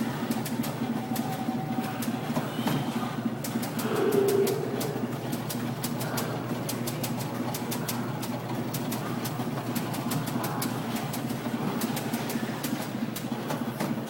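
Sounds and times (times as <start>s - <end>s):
steady low hum: 0.2s - 8.8s.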